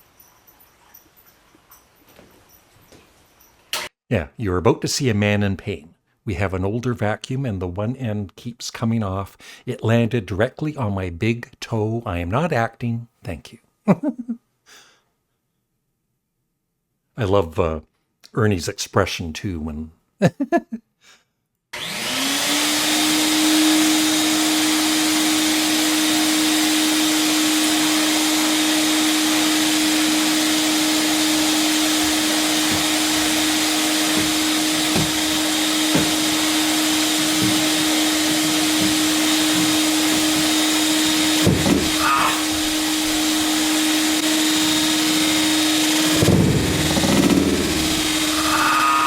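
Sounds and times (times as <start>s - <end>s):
vacuum cleaner motor whine: 21.8s - 49.0s
knocks from handling: 34.1s - 36.5s.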